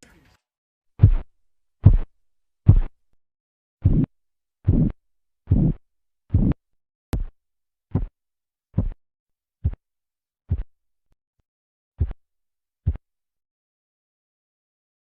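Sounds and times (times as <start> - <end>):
dull heartbeat thumps in stethoscope: 1.0 - 3.0, 3.8 - 6.6, 7.2 - 8.2, 8.8 - 9.0, 9.6 - 9.8, 10.5 - 10.8, 12.0 - 12.2, 12.8 - 13.1.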